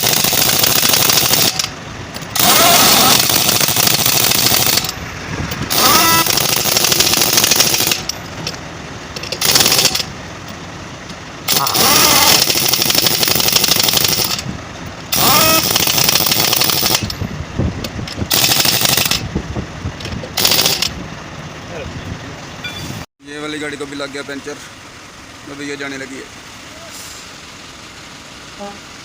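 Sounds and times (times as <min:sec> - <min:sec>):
pneumatic impact wrench hammering: 0:00.0 - 0:08.6, 0:09.2 - 0:10.1, 0:11.5 - 0:14.5, 0:15.1 - 0:17.2, 0:17.8 - 0:19.3, 0:20.0 - 0:21.0.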